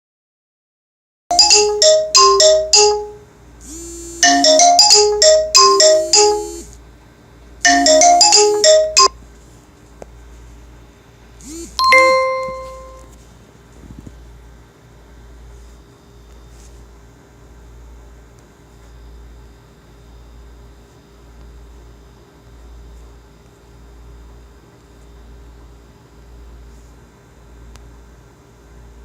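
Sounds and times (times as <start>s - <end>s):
phone ringtone melody: 1.3s - 6.7s, 7.7s - 9.1s, 11.8s - 13.1s
single chime ringing: 11.8s - 13.1s.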